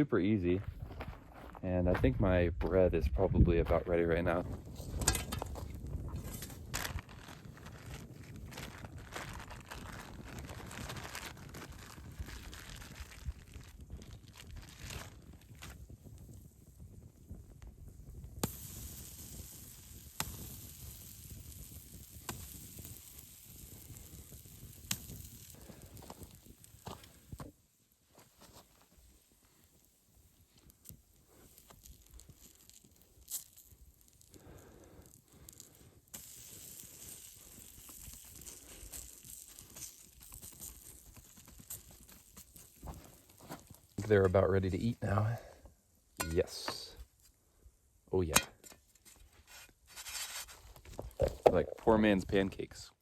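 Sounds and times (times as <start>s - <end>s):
small crackles and clicks: 4.3s - 45.6s
batter sizzling in a hot pan: 4.3s - 47.0s, 48.4s - 51.4s
sharp pops: 18.2s - 27.6s, 50.8s - 51.9s.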